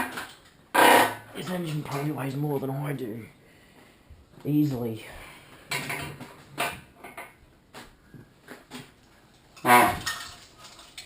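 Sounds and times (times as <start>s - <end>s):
broken parts falling out: 0.0s - 2.1s, 8.5s - 11.0s
metallic clanks and rattles: 9.4s - 11.0s.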